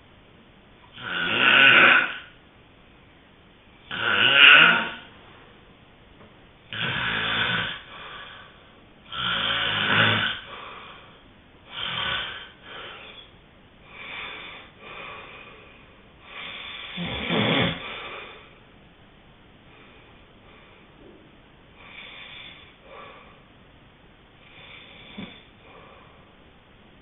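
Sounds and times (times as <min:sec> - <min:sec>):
person snoring: 0:00.9 - 0:02.4, 0:03.9 - 0:05.1, 0:06.7 - 0:08.5, 0:09.1 - 0:11.1, 0:11.7 - 0:13.3, 0:16.3 - 0:18.5, 0:24.5 - 0:25.9
soft breaths: 0:07.8 - 0:08.8, 0:10.4 - 0:18.7, 0:19.6 - 0:23.6, 0:24.3 - 0:26.6.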